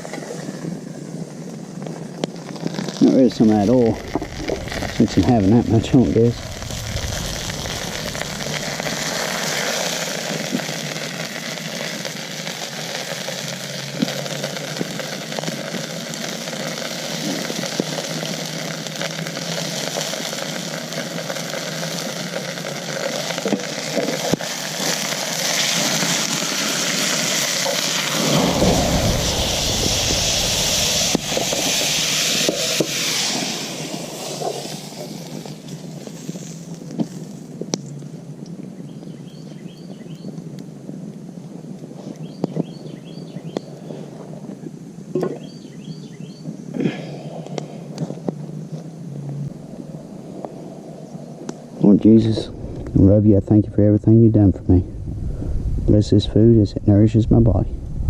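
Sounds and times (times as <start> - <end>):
food sizzling in oil: 2.4 - 37.4
low rumble: 3.4 - 10.5, 27.9 - 32.5, 51.9 - 58.0.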